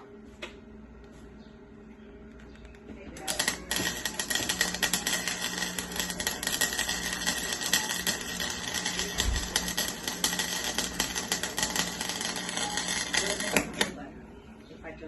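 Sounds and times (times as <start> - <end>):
welding arc crackling: 3.1 - 14.1.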